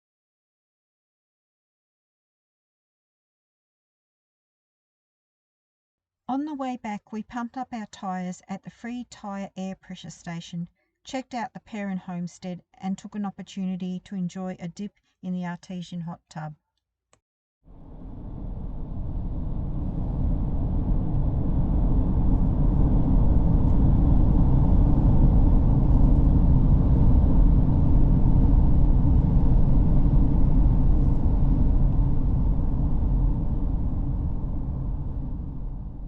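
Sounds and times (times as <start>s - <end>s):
vehicle driving on road: 17.8s - 36.0s.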